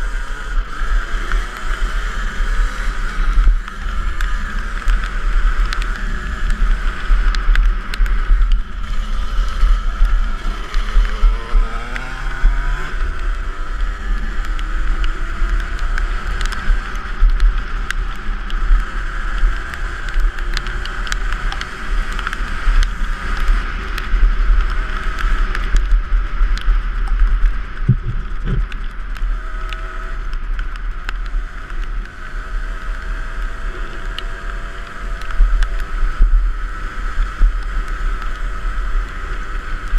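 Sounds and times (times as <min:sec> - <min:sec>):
dirt bike engine revving: 0:00.0 - 0:25.6
wind rumble on microphone: 0:00.0 - 0:39.9.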